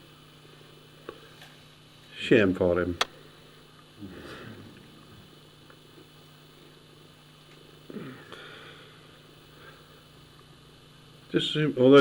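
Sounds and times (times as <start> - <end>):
low electrical hum: 0.0 - 12.0
person breathing close to microphone: 7.9 - 10.1.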